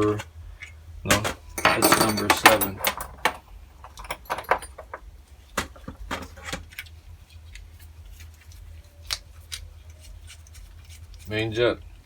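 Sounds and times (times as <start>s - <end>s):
low steady hum: 0.0s - 12.0s
small metal parts clinking: 1.2s - 5.9s.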